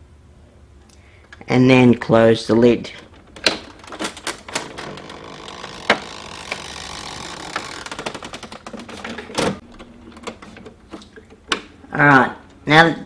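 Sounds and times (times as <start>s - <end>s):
printer mechanism whirring: 3.0s - 11.9s.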